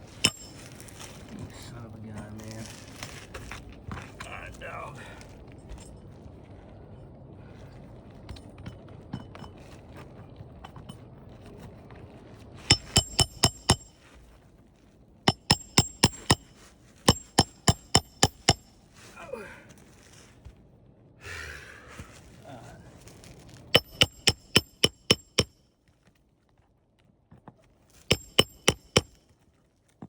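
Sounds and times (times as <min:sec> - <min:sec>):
hammer blows on metal: 0:00.0 - 0:00.8, 0:12.7 - 0:13.9, 0:15.3 - 0:18.7, 0:23.8 - 0:25.5, 0:28.1 - 0:29.1.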